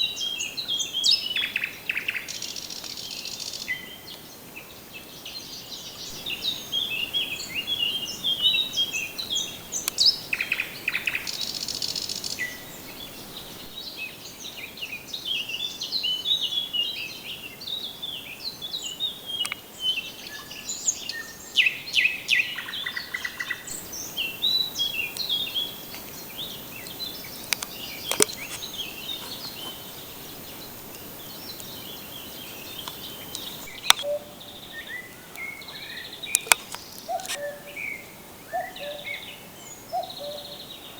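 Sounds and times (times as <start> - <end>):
songbirds singing: 0.0 - 40.9
sharp clicks: 23.7 - 34.1, 36.3 - 37.4.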